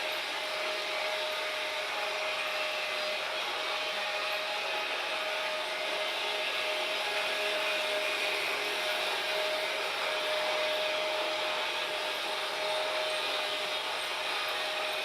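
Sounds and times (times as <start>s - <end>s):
thin steady whine: 0.0s - 15.0s.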